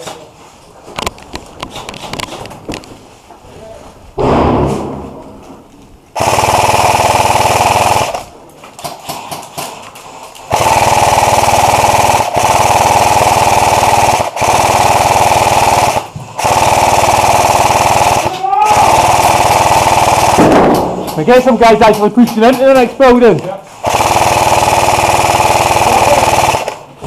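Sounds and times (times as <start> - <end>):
airsoft machine gun firing bursts: 6.2 - 8.3, 10.5 - 22.9, 23.8 - 26.9.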